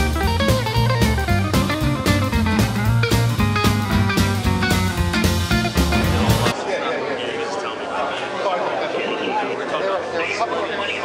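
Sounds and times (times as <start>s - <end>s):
blues guitar instrumental: 0.0s - 6.5s.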